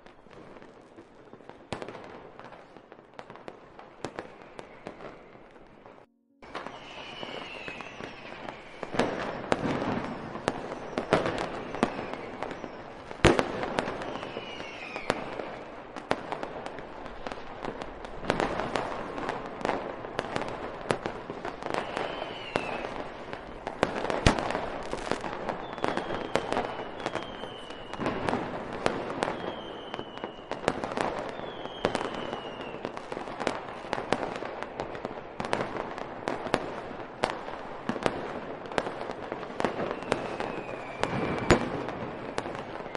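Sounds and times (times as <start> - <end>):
fireworks bangs and crackling: 0.0 - 42.9
falling firework whistles: 3.9 - 15.8, 18.3 - 35.8, 39.3 - 42.9.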